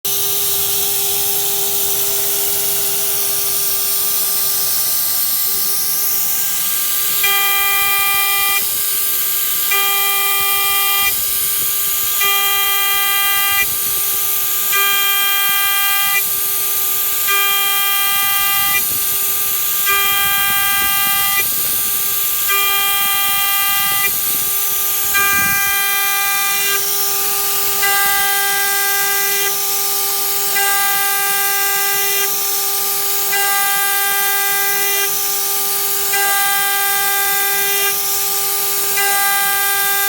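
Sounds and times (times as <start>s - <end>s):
machine spindle whine: 0.1s - 40.0s
shrill cutting squeal: 12.0s - 32.2s.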